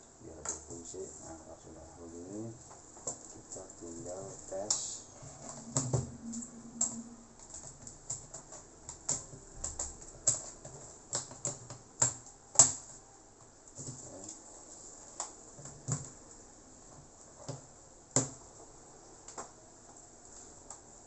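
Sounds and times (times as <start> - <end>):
laptop parts clicking and tapping: 7.5 - 14.0.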